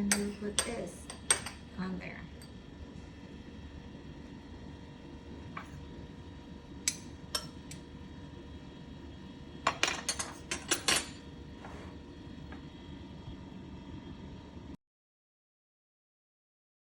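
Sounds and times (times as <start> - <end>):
cutlery clinking against dish: 0.1 - 1.7, 6.9 - 7.8, 9.7 - 11.2.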